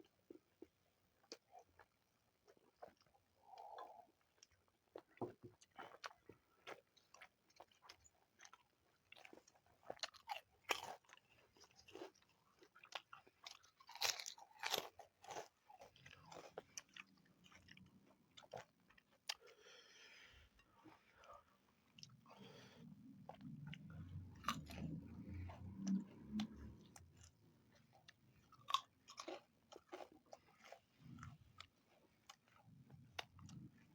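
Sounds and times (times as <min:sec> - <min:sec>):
crunching and chewing food: 0:00.0 - 0:33.9.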